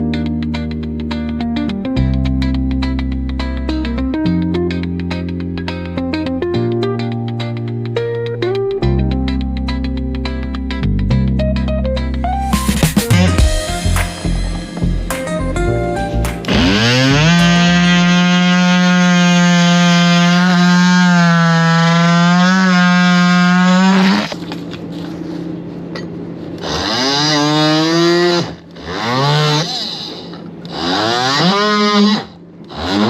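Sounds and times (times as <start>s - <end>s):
power tool motor: 16.4s - 24.6s, 26.6s - 33.0s.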